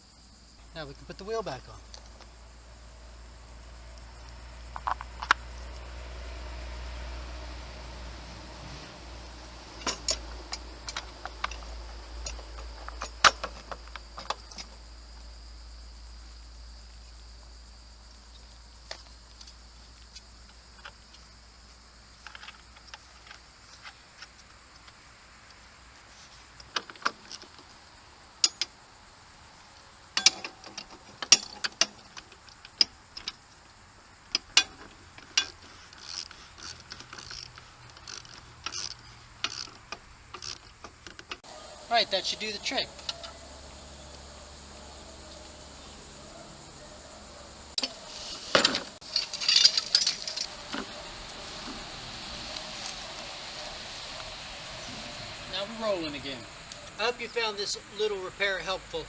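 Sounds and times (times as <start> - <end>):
metallic clicks of wrench and bolt: 30.2 - 33.4.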